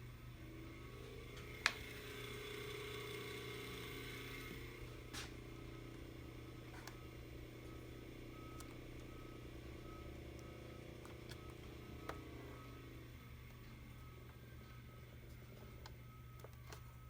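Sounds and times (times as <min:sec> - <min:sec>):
electric motor hum and whine: 0:00.0 - 0:17.0.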